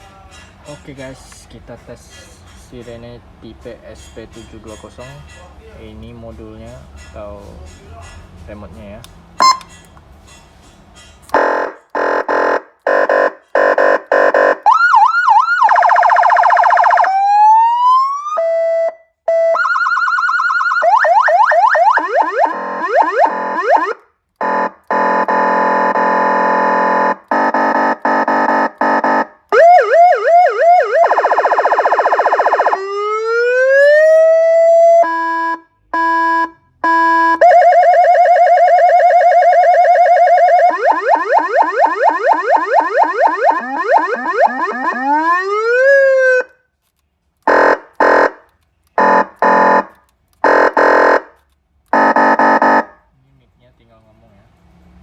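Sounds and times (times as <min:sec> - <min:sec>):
electronic siren cycling patterns: 0:09.4 - 0:09.7, 0:11.3 - 0:46.6, 0:47.5 - 0:48.4, 0:49.0 - 0:51.3, 0:51.9 - 0:53.0.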